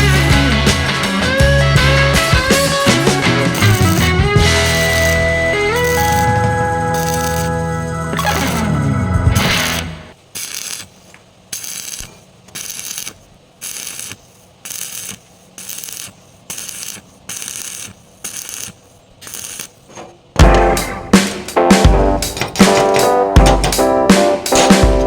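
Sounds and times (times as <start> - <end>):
hand tool scraping on metal: 2.6 - 8.8, 9.6 - 20.2.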